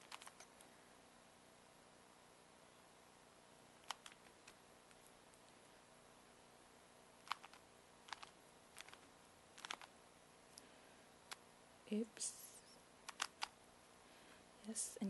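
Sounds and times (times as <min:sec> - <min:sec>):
faint room hiss: 0:00.0 - 0:15.0
plastic cube clicks: 0:13.1 - 0:13.5.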